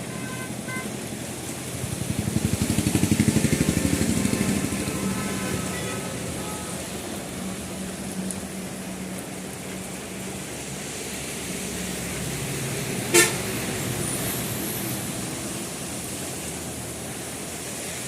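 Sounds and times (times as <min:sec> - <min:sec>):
car horn toot: 0:00.0 - 0:00.9, 0:13.1 - 0:13.4
heavy rain hiss: 0:00.0 - 0:18.0
traffic on wet road: 0:00.0 - 0:18.0
vehicle engine hum: 0:00.0 - 0:18.0.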